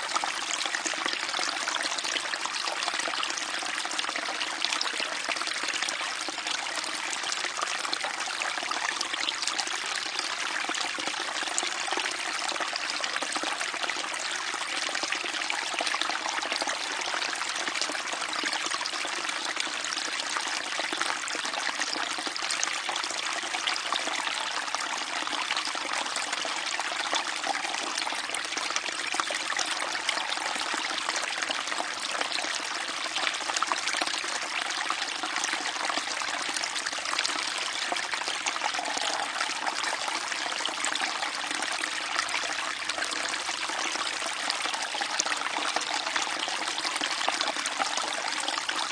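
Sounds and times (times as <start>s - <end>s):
stream babbling over stones: 25.6s - 48.9s.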